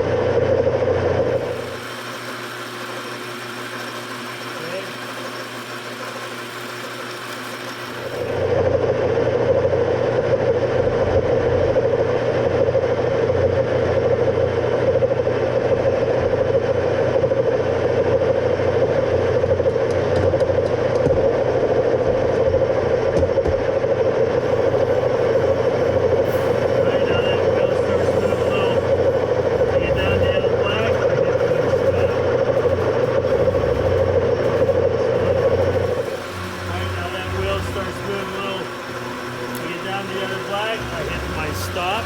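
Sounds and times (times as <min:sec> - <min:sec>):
lathe running: 0:01.0 - 0:10.8, 0:24.3 - 0:42.0
lathe tool cutting: 0:01.2 - 0:09.0, 0:24.4 - 0:42.0.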